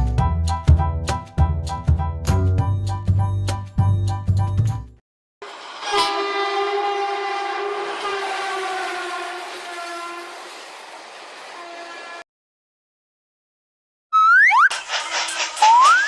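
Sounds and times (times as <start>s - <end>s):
train horn blast: 5.4s - 10.6s, 11.5s - 12.2s
train passing: 5.4s - 12.2s.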